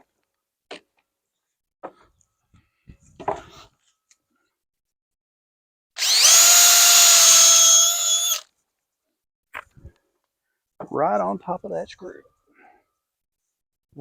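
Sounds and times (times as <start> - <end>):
power drill whining: 6.0 - 8.5.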